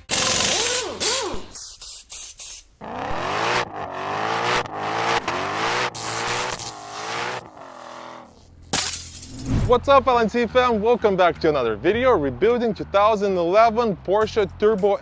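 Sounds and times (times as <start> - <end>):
car engine revving: 2.8 - 8.6.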